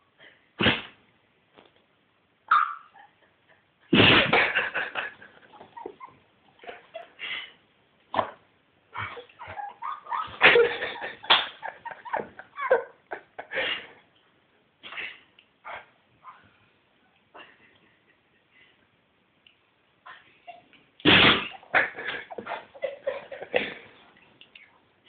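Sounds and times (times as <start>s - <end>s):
dog sneezing: 0.6s - 1.0s, 21.0s - 21.8s.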